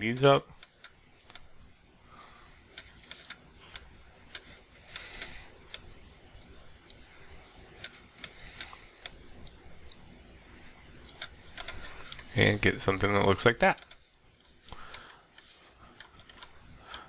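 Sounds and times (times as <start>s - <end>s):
computer mouse and keyboard clicks: 2.7s - 5.9s, 11.0s - 12.3s, 14.9s - 17.0s.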